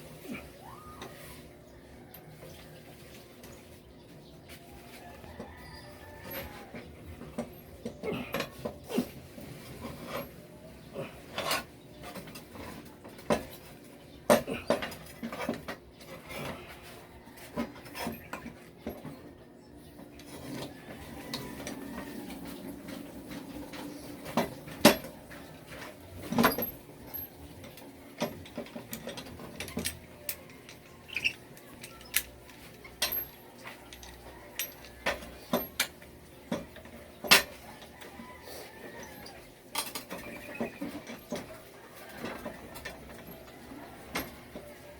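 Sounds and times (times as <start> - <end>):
rubbing and scraping: 8.2 - 13.8
metal tools clinking: 24.2 - 36.0.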